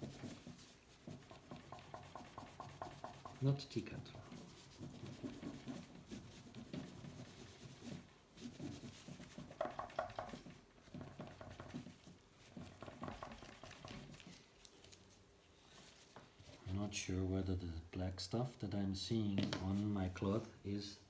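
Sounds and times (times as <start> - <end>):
cloth rubbing metal toy car: 0.0 - 14.2.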